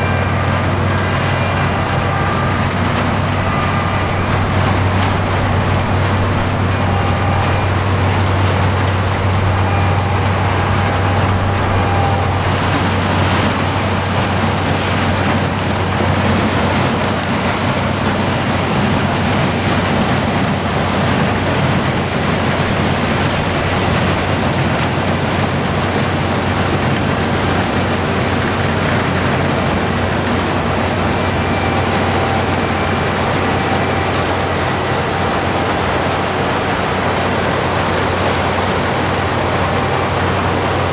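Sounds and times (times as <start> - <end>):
faint whines: 0.0 - 15.2
combine harvester running: 0.0 - 40.9.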